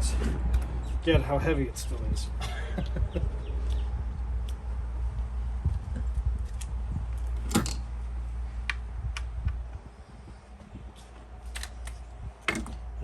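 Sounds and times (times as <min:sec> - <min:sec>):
low steady hum: 0:00.0 - 0:13.0
tools clicking and knocking: 0:07.4 - 0:07.8, 0:11.5 - 0:12.9.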